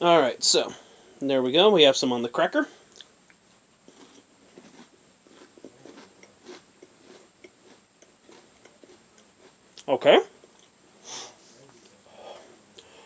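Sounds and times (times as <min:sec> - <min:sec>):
person crunching a cracker: 0:03.9 - 0:09.6.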